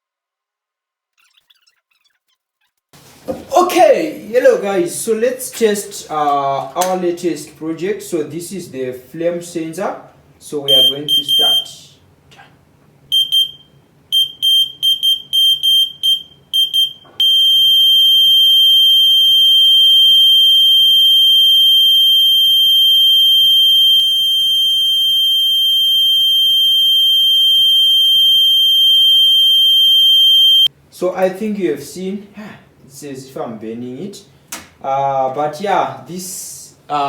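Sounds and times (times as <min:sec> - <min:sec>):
high-pitched alarm buzzer: 0:10.7 - 0:11.7, 0:13.1 - 0:30.7.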